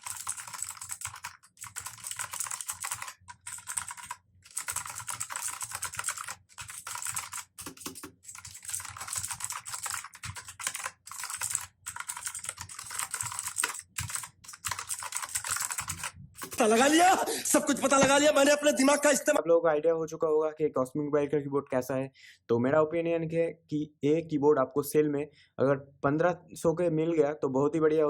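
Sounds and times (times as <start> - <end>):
mechanical keyboard typing: 0.0 - 16.8.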